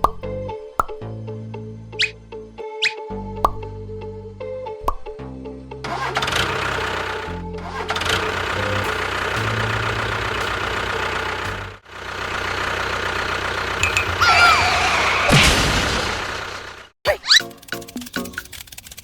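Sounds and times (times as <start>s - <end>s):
background music: 0.0s - 6.2s
small motor running: 5.9s - 14.2s, 17.6s - 19.0s.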